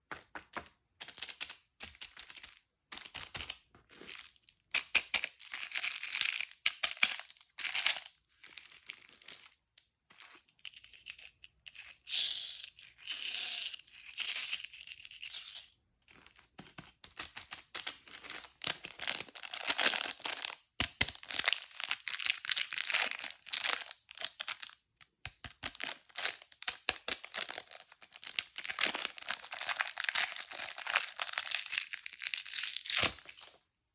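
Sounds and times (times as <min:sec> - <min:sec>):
plastic wrappers crinkling and tearing: 0:17.4 - 0:24.8, 0:25.6 - 0:33.6.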